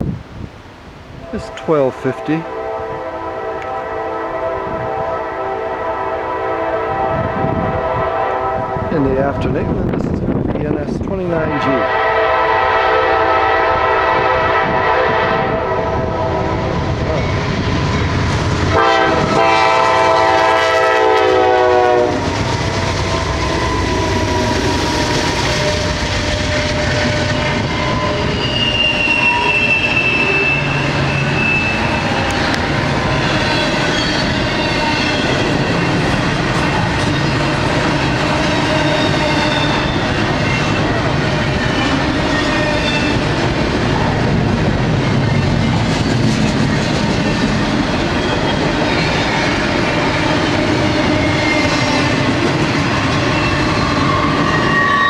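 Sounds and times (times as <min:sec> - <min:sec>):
train horn blast: 0:01.2 - 0:09.9, 0:11.4 - 0:17.4, 0:18.2 - 0:43.2
high wheel squeal: 0:22.3 - 0:43.2, 0:50.9 - 0:52.2, 0:52.9 - 0:55.0.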